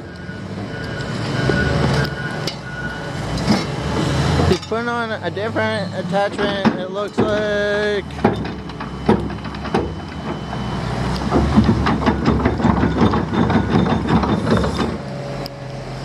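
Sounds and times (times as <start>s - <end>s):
heavy machinery engine rumble: 0.0s - 16.0s
knocks and clicks: 6.2s - 15.0s.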